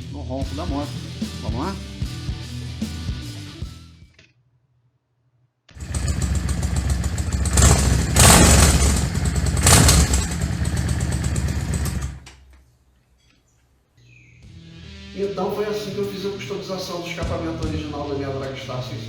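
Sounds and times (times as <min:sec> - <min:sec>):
motorcycle engine revving: 0:05.7 - 0:12.2.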